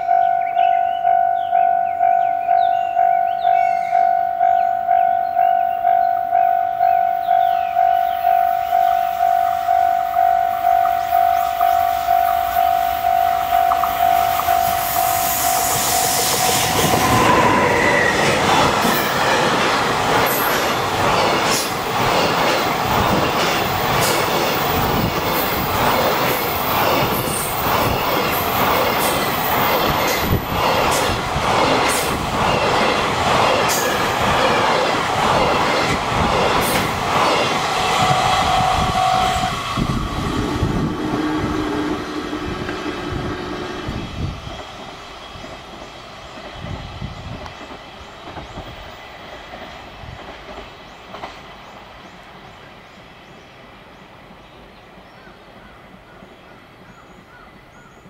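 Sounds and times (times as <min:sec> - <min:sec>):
train wheels clattering over rail joints: 0:16.2 - 0:38.2.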